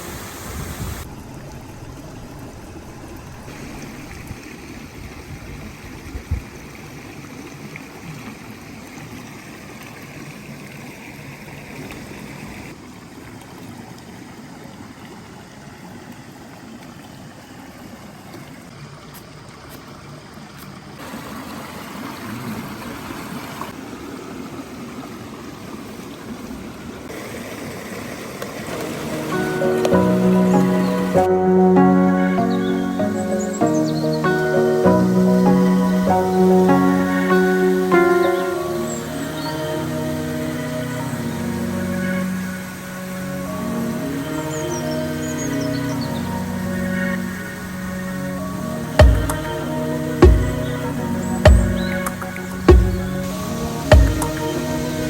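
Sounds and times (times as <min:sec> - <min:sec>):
water rushing over rock: 0:00.0 - 0:19.5, 0:20.8 - 0:31.4, 0:47.5 - 0:55.0.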